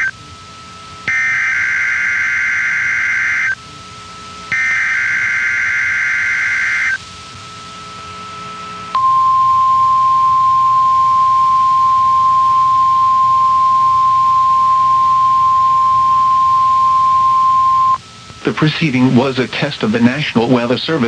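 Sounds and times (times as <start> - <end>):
buzzy digital data burst: 1.1 - 7.0
steady weather alert tone: 9.0 - 21.0.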